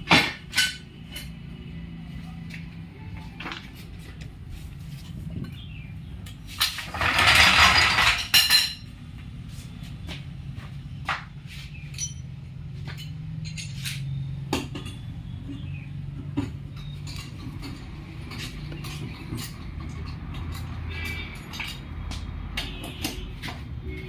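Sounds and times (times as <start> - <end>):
tools clinking on metal: 11.9 - 23.6.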